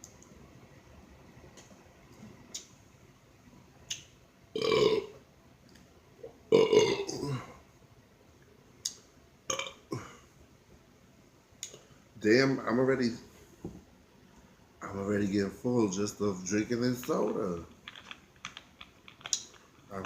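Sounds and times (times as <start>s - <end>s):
man burping loudly: 4.6s - 5.1s, 6.5s - 7.6s, 9.5s - 10.2s.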